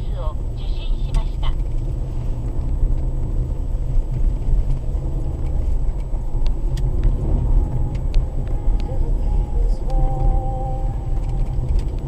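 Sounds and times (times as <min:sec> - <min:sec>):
car engine and tyre rumble: 0:00.0 - 0:12.0.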